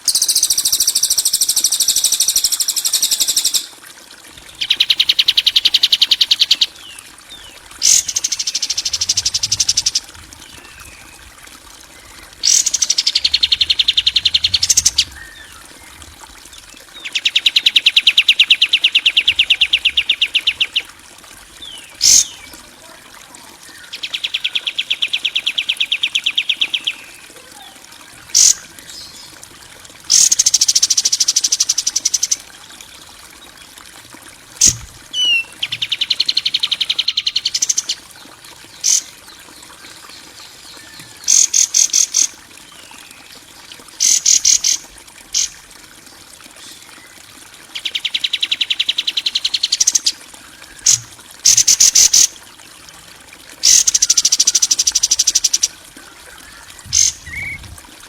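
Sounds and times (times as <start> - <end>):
faint trickling water: 0.0 - 58.0
insect or frog sounds: 44.0 - 44.8.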